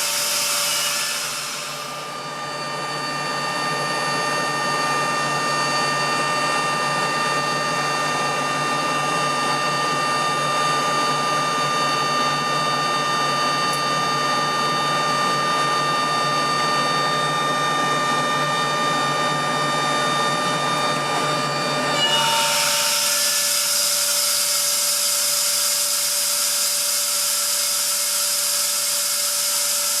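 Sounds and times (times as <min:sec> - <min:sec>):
compressor venting air hiss: 0:00.0 - 0:02.3, 0:22.5 - 0:30.0
air compressor whine: 0:00.0 - 0:30.0.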